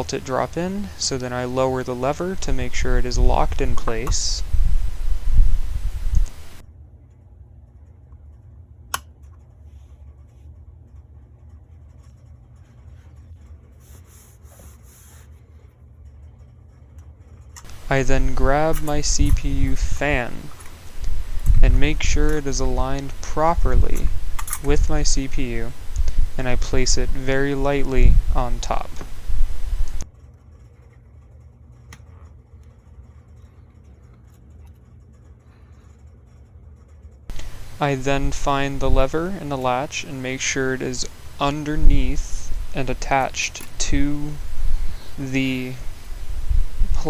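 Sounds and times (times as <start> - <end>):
scratchy bursts: 0.0 - 6.6, 17.7 - 30.1, 37.3 - 47.0
low electrical hum: 0.0 - 47.0
rubbing and scraping handling noise: 0.0 - 47.0.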